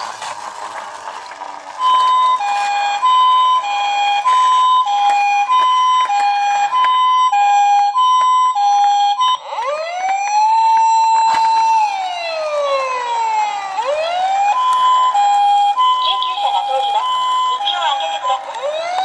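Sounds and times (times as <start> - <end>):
toy ambulance two-tone siren: 1.8 - 19.0.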